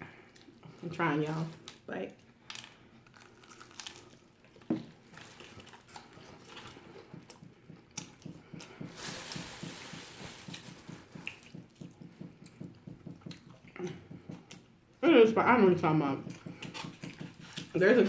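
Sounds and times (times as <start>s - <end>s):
chewing with wet clicks: 1.7s - 8.7s, 10.8s - 14.7s, 16.2s - 17.8s.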